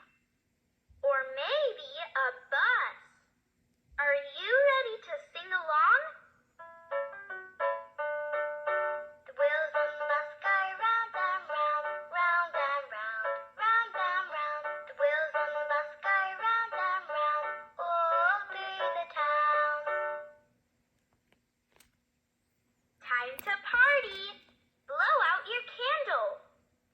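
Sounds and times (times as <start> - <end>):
faint steady hum: 0.0 - 26.9
children's song from small speaker: 8.8 - 20.4, 23.1 - 26.4.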